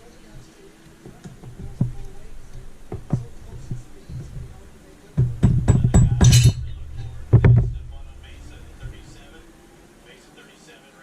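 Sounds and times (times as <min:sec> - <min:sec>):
metal knocks and clinks: 0:01.1 - 0:09.4
clattering metal strikes: 0:01.4 - 0:09.5.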